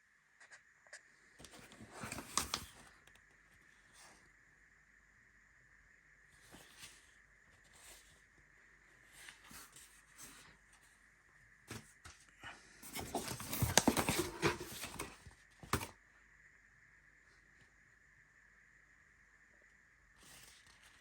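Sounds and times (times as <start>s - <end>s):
packaging rustling and tapping: 1.4s - 2.9s, 12.9s - 15.9s
packaging scraping: 1.5s - 2.9s, 12.8s - 15.9s.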